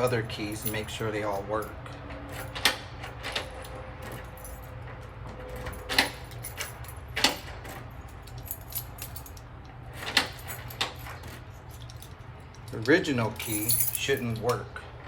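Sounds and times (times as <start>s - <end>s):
keys jingling on a ring: 0.0s - 14.6s.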